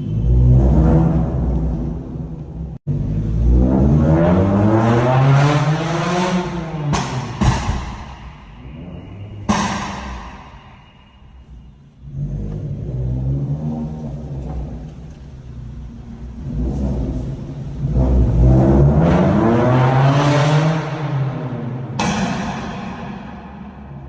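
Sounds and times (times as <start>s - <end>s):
car engine revving: 0.0s - 10.7s, 12.0s - 24.0s.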